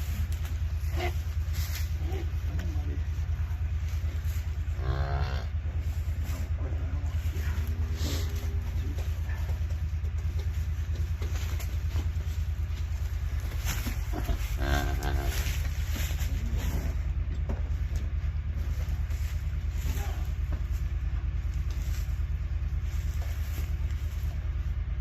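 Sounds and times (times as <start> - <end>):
engine running with rapid pulsing: 0.0 - 25.0
cow mooing: 4.8 - 5.6, 14.2 - 15.5.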